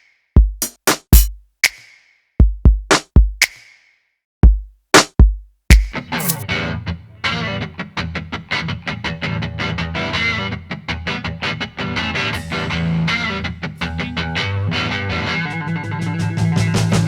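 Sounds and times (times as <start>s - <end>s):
rock music with guitar: 5.9s - 17.0s.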